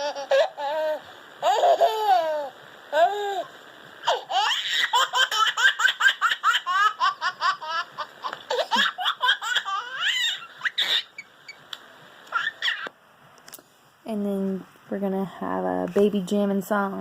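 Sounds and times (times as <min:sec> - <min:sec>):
baby laughing: 0:00.0 - 0:11.6, 0:12.3 - 0:12.9.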